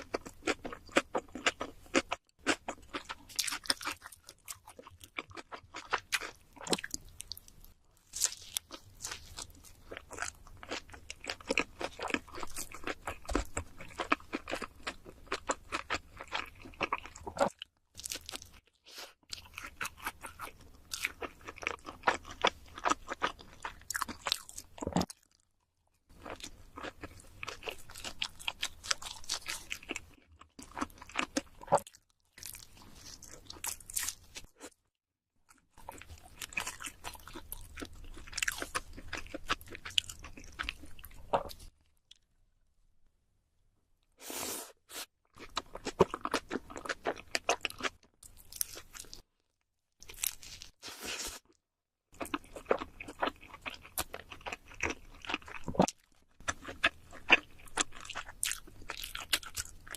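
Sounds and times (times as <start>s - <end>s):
chewing and crunching food: 0.0s - 42.4s, 45.2s - 59.9s.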